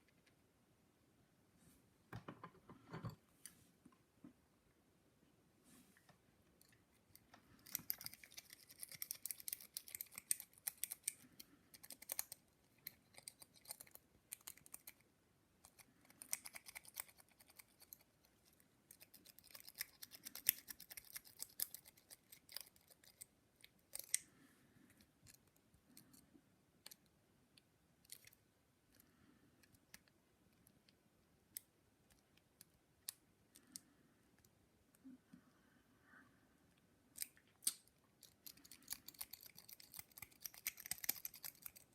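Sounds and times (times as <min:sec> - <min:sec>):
lock pick clicking and scratching: 0:06.6 - 0:15.0, 0:15.6 - 0:24.2, 0:37.2 - 0:41.9.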